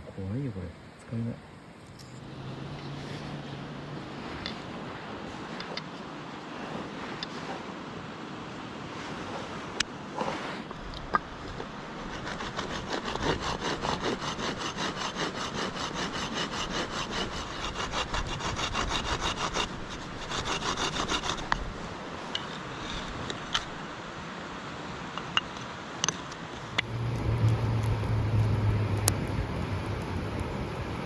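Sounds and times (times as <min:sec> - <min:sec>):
hand saw cutting wood: 0:12.0 - 0:21.7.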